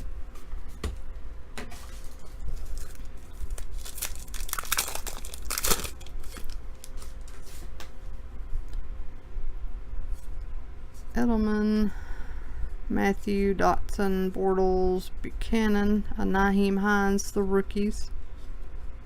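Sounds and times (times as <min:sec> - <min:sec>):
foil wrapper tearing and crinkling: 0:02.0 - 0:07.3.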